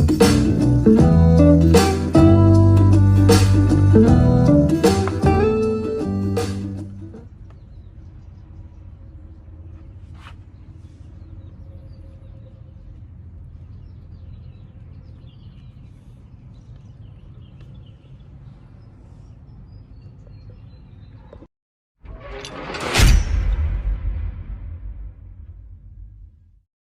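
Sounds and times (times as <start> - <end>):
steady low hum: 7.1 - 20.2.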